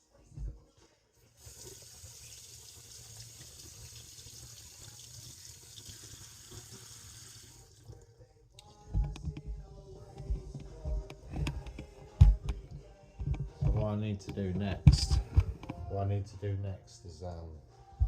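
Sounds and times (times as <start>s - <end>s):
tap water running into sink: 1.4s - 8.0s.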